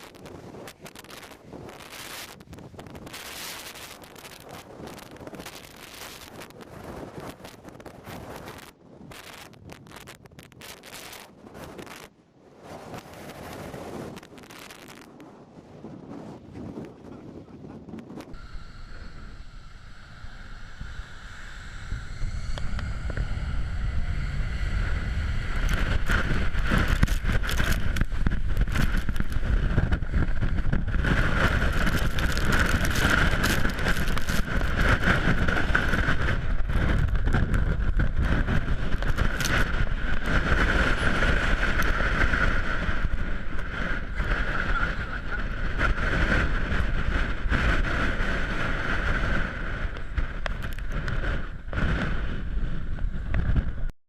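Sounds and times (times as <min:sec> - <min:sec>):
jet blast buffeting microphone: 0:15.8 - 0:53.9
jet engines whining and rumbling: 0:17.0 - 0:47.3.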